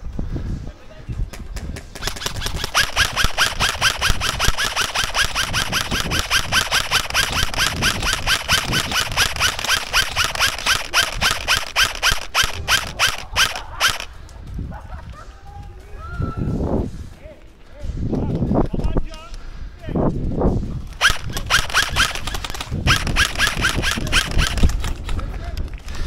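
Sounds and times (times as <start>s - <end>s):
airsoft gear mechanical clicks: 2.0s - 14.4s, 20.9s - 26.0s.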